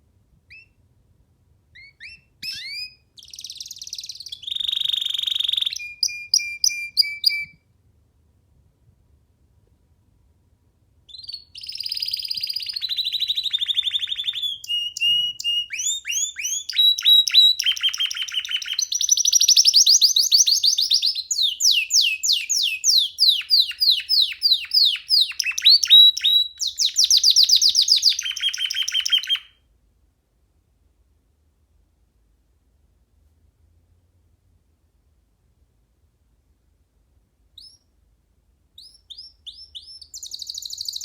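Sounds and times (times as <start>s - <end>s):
canary singing trills: 0.5s - 0.8s, 1.8s - 7.6s, 11.1s - 29.5s, 37.6s - 37.9s, 38.8s - 41.0s.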